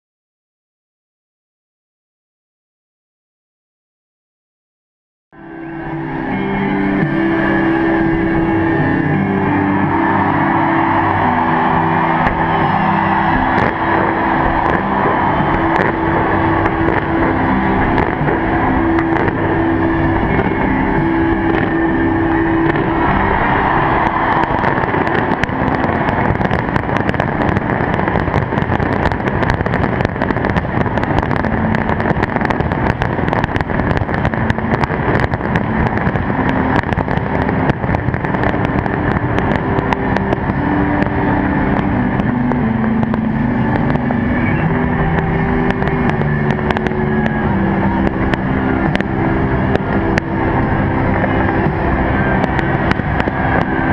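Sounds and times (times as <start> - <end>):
fireworks bangs and crackles: 5.4 - 53.9
loud continuous din: 5.4 - 53.9.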